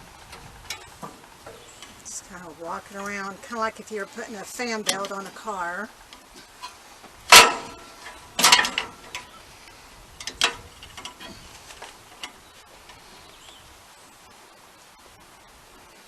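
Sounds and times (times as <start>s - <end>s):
light metal ticks: 4.6s - 5.5s
saw blade metal clanks: 6.6s - 9.3s.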